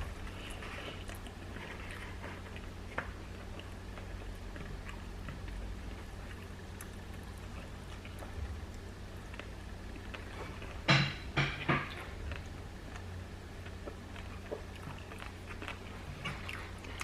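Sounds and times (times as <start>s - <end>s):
person chewing: 0.0s - 10.9s, 11.5s - 17.0s
steady low hum: 0.0s - 17.0s.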